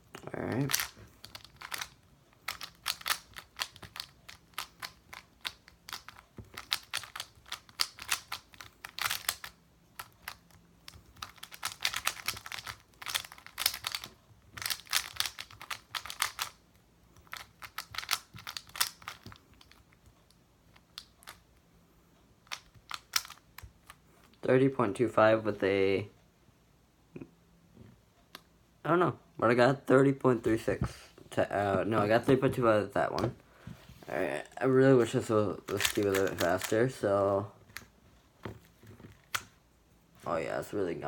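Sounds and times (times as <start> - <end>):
plastic cube clicking: 0.6 - 16.6, 17.2 - 19.9, 22.5 - 23.8, 35.7 - 36.8.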